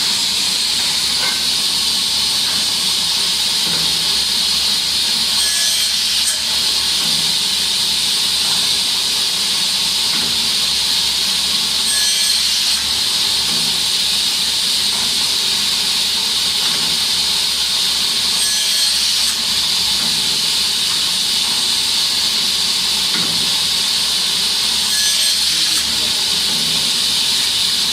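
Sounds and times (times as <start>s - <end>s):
saw line hissing: 0.0s - 8.1s.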